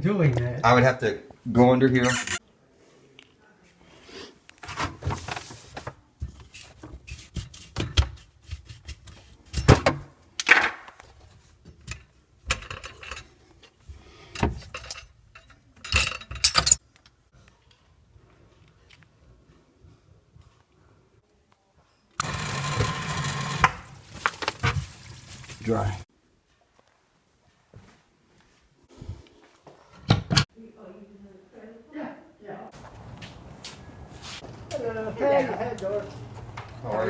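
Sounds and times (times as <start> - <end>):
metal objects clinking and clanking: 11.8 - 13.4, 14.3 - 16.8.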